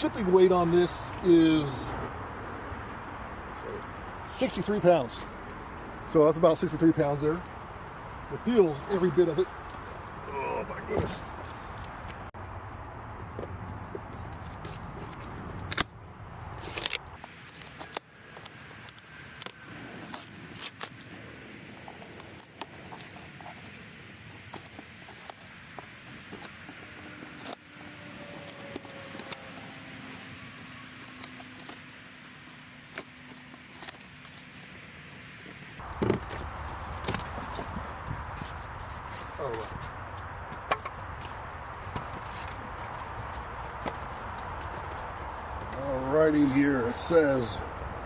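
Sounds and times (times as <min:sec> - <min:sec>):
cardboard scraping and crackling: 0:13.4 - 0:46.0
cardboard tearing: 0:16.5 - 0:18.0.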